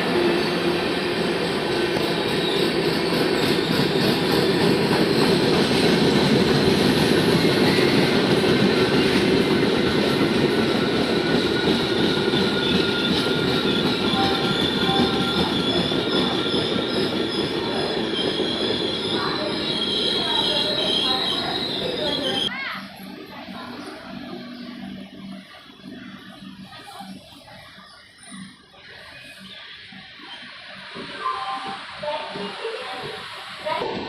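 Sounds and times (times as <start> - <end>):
train rumbling on rails: 0.0 - 34.0
high-pitched wheel squeal: 10.6 - 22.6.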